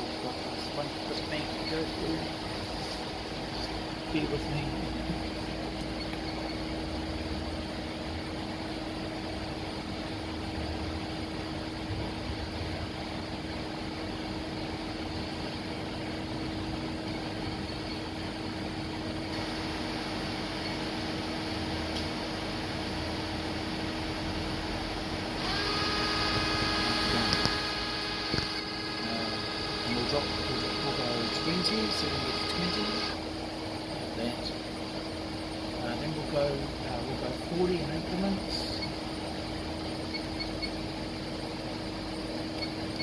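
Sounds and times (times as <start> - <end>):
high drive whine: 0.0 - 43.0
lathe machine hum: 14.8 - 36.8.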